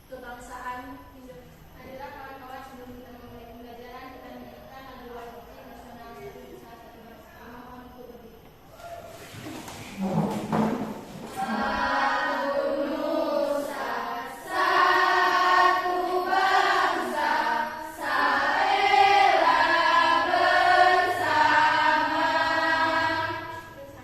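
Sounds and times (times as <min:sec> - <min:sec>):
group of voices singing: 0:11.3 - 0:24.0.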